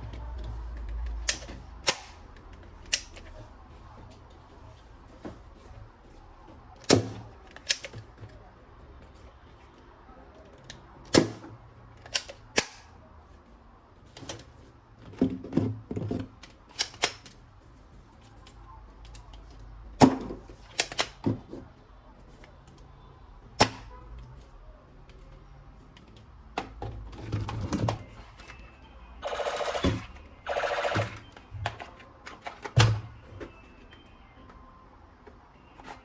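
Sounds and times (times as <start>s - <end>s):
plastic toy gun clicks: 12.0s - 12.9s, 16.7s - 17.3s.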